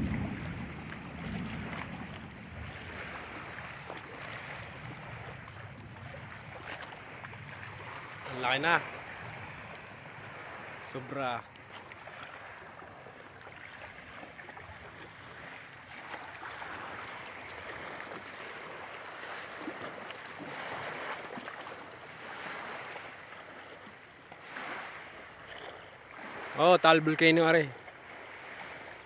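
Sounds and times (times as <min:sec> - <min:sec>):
steady rushing outdoor noise: 0:00.0 - 0:11.6.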